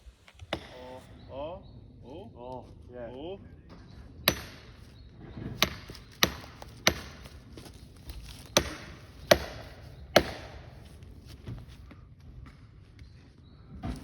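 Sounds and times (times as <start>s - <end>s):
axe chopping into wood: 4.3s - 4.8s, 5.4s - 10.9s.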